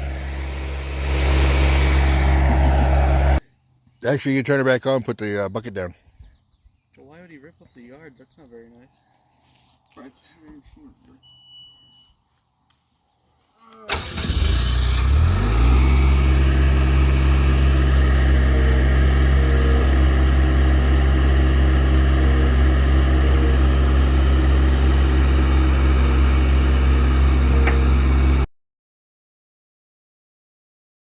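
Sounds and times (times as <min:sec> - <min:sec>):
diesel engine cranking and idling: 0:00.0 - 0:03.4, 0:13.9 - 0:28.5.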